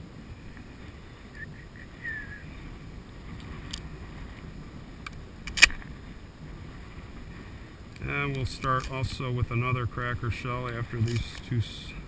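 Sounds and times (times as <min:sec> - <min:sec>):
wind rumbling on microphone: 0:00.0 - 0:12.0
shotgun loading clicks: 0:05.0 - 0:05.9, 0:11.0 - 0:11.5.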